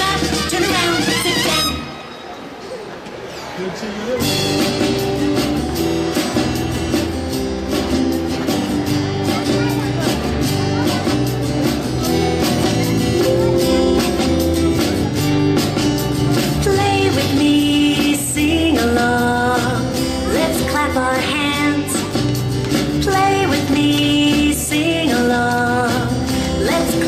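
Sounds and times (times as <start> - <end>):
guitar: 4.2 - 27.0
steady beat: 10.0 - 16.8
woman singing: 16.6 - 22.3, 22.9 - 27.0.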